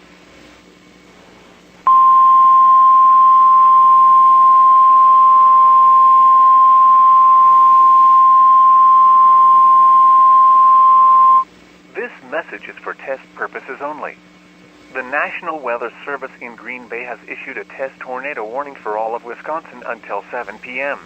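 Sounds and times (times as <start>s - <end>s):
loud steady alarm beep: 1.9s - 11.4s.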